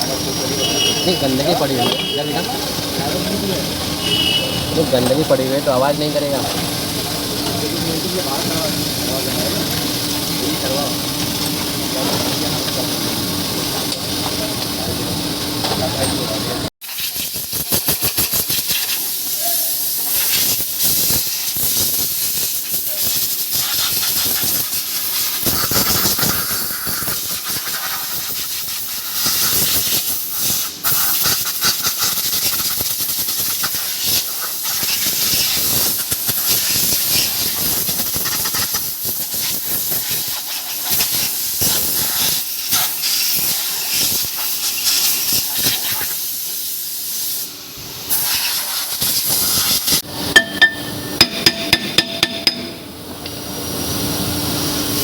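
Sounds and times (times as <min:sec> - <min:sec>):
compressed air blow gun hissing: 0:16.8 - 0:47.5, 0:48.1 - 0:50.1.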